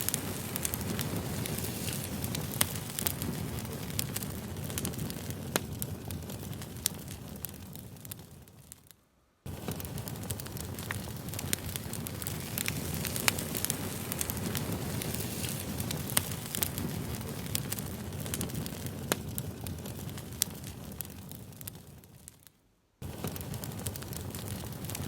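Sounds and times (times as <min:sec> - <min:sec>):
campfire flames rushing: 0:00.0 - 0:08.9, 0:09.5 - 0:25.0
burning wood crackling and popping: 0:00.0 - 0:25.0.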